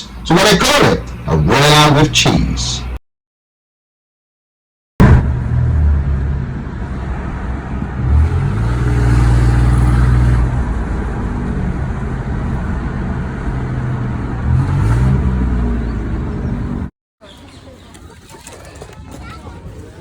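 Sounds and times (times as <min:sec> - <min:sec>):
car engine revving: 0:05.0 - 0:16.9.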